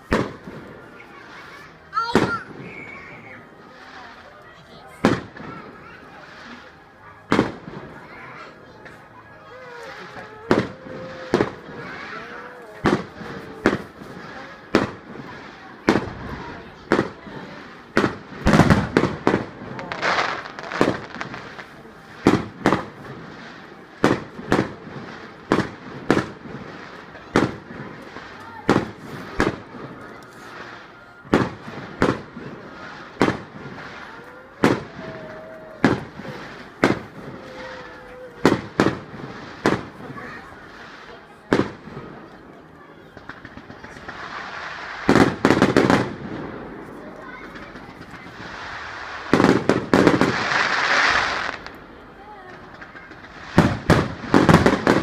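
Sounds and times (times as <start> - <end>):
firework bangs: 0.0 - 4.2, 4.9 - 9.0, 9.6 - 55.0
faint firework whistling: 2.1 - 3.9, 9.8 - 12.2, 28.7 - 39.9
crackling hiss: 9.5 - 42.3, 43.2 - 55.0.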